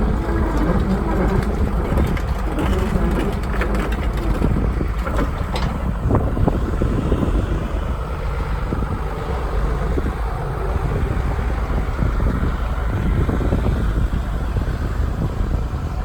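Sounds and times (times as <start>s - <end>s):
light clicks and knocks: 0.0s - 6.1s
excavator diesel engine running: 0.0s - 16.0s
wind buffeting microphone: 0.0s - 16.0s.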